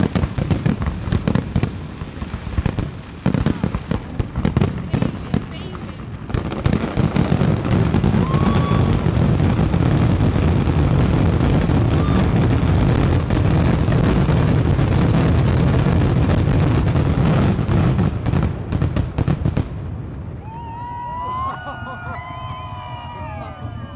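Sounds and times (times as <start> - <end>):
fireworks bangs and crackling: 0.0 - 23.9.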